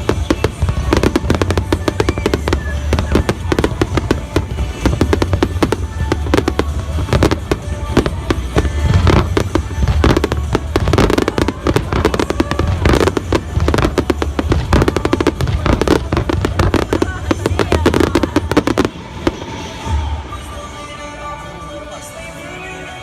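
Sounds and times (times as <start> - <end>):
fireworks bangs and crackling: 0.0 - 20.7
music playing: 0.0 - 23.0.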